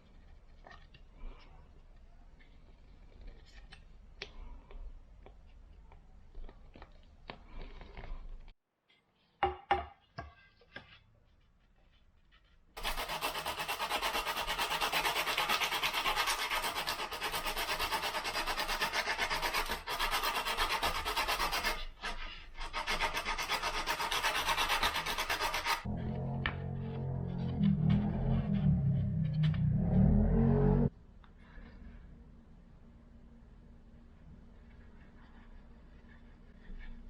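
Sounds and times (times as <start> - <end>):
sandpaper rubbing on wood: 12.8 - 25.9.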